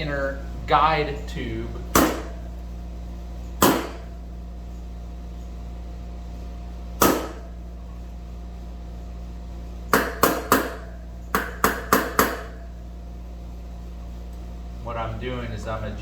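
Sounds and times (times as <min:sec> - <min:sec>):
hammer striking metal bearing: 0:01.9 - 0:02.4, 0:03.6 - 0:04.1, 0:07.0 - 0:07.5, 0:09.9 - 0:12.6.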